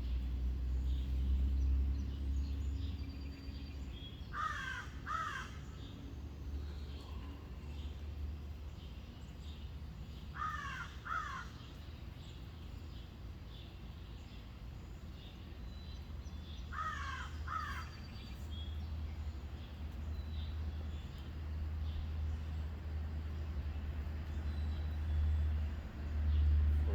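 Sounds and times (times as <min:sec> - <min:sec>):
crow cawing: 0:04.3 - 0:05.6, 0:10.4 - 0:11.6, 0:16.7 - 0:17.9
steady low rumble: 0:26.6 - 0:26.9.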